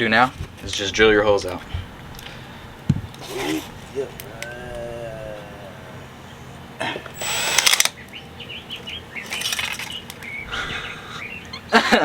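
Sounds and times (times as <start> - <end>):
small drill bursts: 7.2 - 8.0
thin metal crinkling: 9.2 - 10.3.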